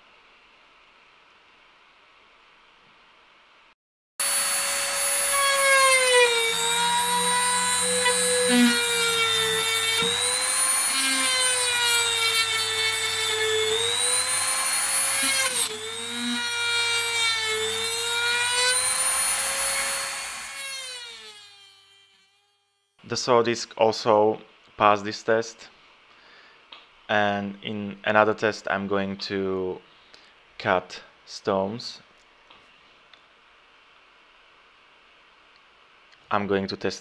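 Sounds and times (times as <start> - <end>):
rotary tool saw whining: 4.2 - 22.9.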